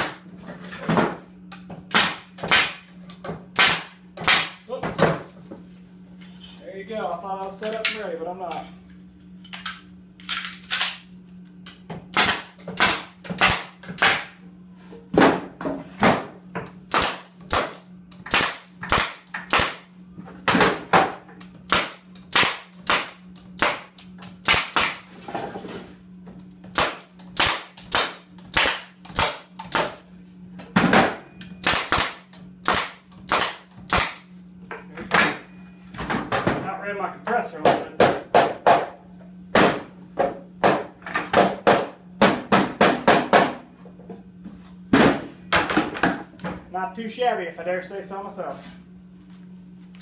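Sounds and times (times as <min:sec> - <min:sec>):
steady low hum: 0:00.0 - 0:50.0
pneumatic stapler shots: 0:01.9 - 0:02.9, 0:03.5 - 0:04.6, 0:11.6 - 0:14.4, 0:16.6 - 0:19.9, 0:20.5 - 0:25.1, 0:26.7 - 0:30.0, 0:30.8 - 0:34.3.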